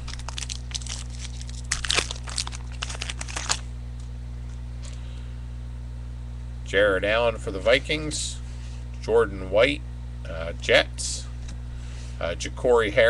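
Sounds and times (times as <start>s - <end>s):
card wrappers crinkling: 0.0s - 4.1s
steady low hum: 0.0s - 13.0s.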